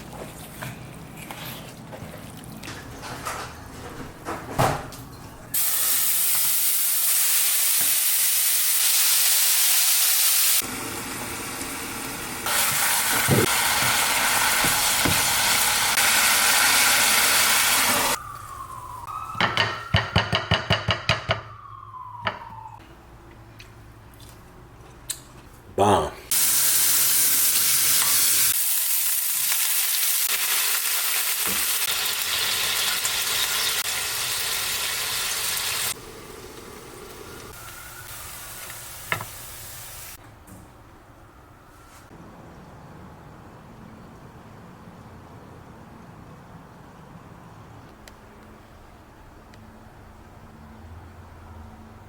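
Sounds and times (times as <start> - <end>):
food sizzling in a pan: 5.6 - 18.2, 26.3 - 40.2.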